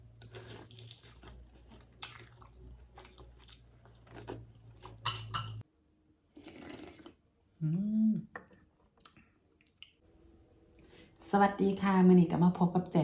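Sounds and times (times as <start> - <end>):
person chewing and biting: 0.0 - 5.1.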